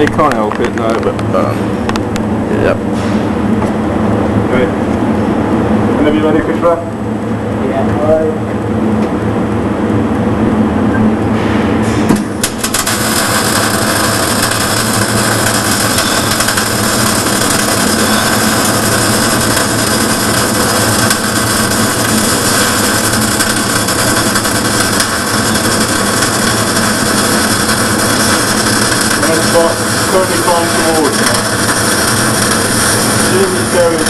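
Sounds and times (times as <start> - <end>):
welding arc crackling and hissing: 12.0 - 34.0.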